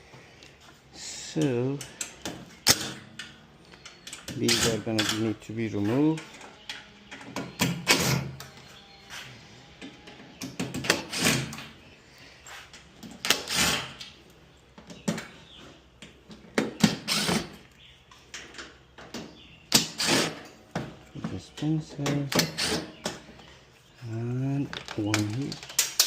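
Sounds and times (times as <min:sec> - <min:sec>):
clicks and knocks of parts: 0:01.4 - 0:08.7, 0:12.6 - 0:23.6, 0:24.6 - 0:26.0
short scraping rasps: 0:19.8 - 0:20.6.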